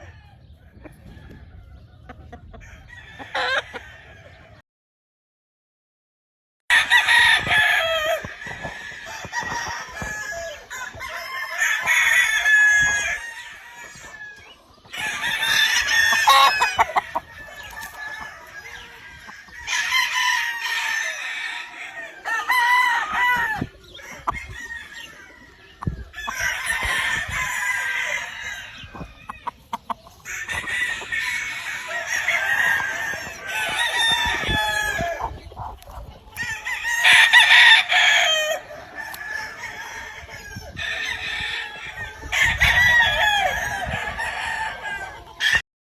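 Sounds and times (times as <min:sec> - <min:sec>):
roosters crowing: 0:00.0 - 0:04.6, 0:06.7 - 0:45.6
quiet rooster calling: 0:09.1 - 0:25.4.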